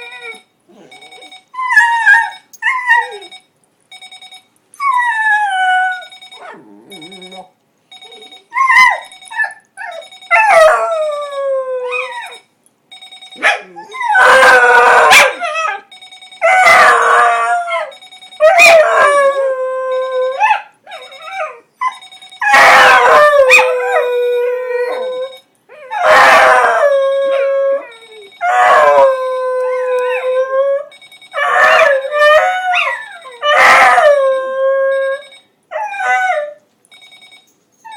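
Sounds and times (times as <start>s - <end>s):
alarm clock beeping: 0.0s - 1.6s, 2.2s - 4.5s, 5.9s - 11.4s, 12.0s - 13.4s, 15.9s - 20.4s, 21.0s - 25.5s, 26.3s - 29.2s, 30.9s - 32.6s, 33.2s - 35.5s, 36.9s - 37.5s
dog howling: 13.7s - 15.8s, 22.4s - 25.1s, 25.8s - 36.6s.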